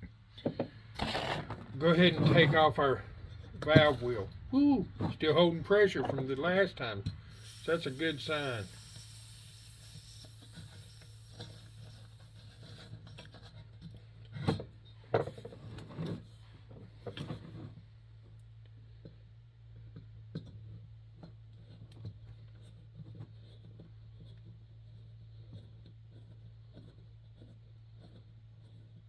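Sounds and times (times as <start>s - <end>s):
light scraping: 0.4s - 7.0s
pressurised air hissing: 7.2s - 12.7s.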